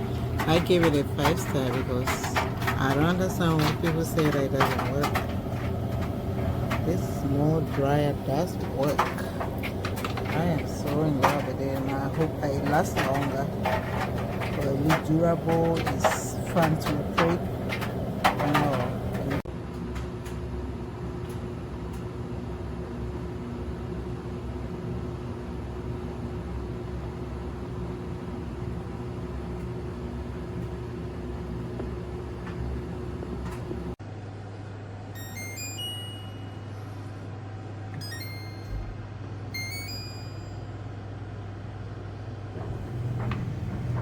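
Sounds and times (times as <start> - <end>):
clothes dryer motor hum: 0.0 - 44.0.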